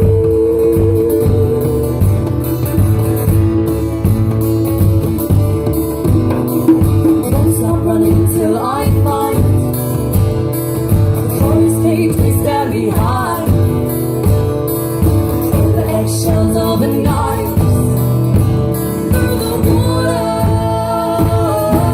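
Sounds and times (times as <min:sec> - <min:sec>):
person singing: 0:00.0 - 0:02.7, 0:05.9 - 0:09.8, 0:19.0 - 0:21.9
bass: 0:00.0 - 0:21.9
guitar: 0:00.0 - 0:21.9.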